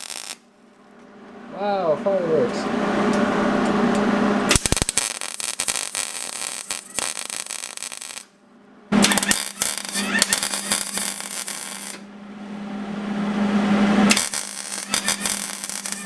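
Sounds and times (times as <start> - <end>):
welding arc crackling: 0.0 - 0.5, 4.5 - 12.0, 14.1 - 16.0.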